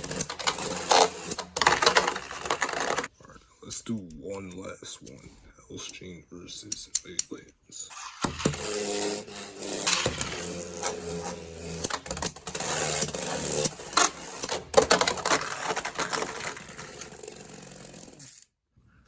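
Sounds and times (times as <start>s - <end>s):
spinning tops clacking: 0.0s - 3.1s, 7.9s - 18.4s
spinning tops whirring: 0.0s - 3.1s, 7.9s - 18.4s.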